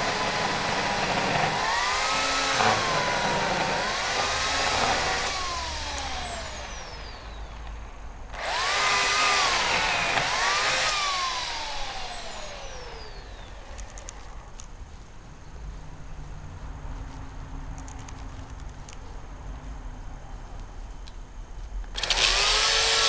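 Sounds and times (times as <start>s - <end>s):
electric chainsaw whining: 0.0s - 14.3s, 22.0s - 23.0s.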